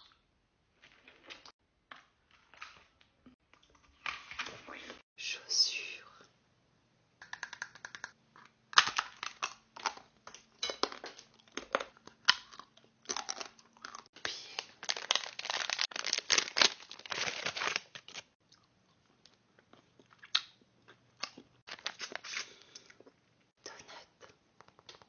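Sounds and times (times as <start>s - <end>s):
packaging crinkling and tearing: 8.8s - 18.4s, 21.2s - 22.7s.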